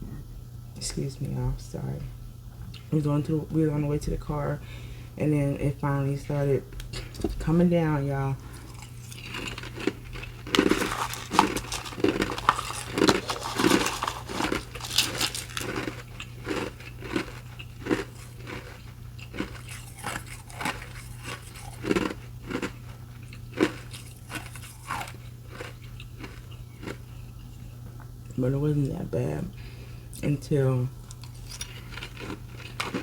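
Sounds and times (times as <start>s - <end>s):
crunching and chewing ice: 8.1s - 28.4s, 31.0s - 33.0s.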